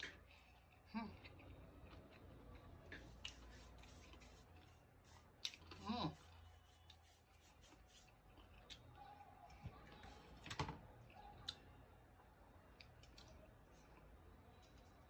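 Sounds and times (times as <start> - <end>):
person chewing food: 0.0 - 9.6.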